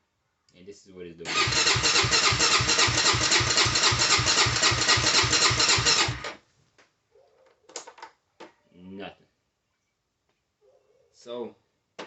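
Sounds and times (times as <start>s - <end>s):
engine cranking without starting: 1.3s - 6.4s.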